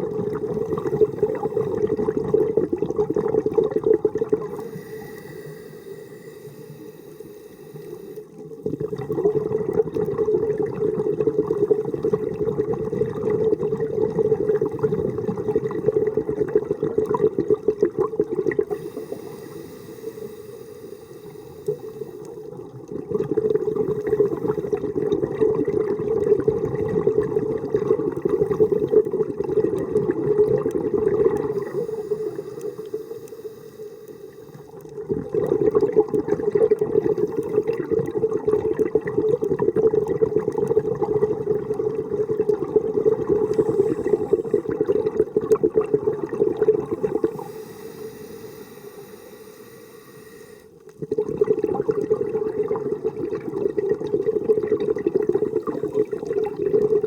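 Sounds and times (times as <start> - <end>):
exhaled bubbles underwater: 0.0 - 57.0
regulator inhalations: 4.5 - 8.4, 18.7 - 22.5, 31.5 - 34.8, 43.4 - 44.9, 47.0 - 50.9.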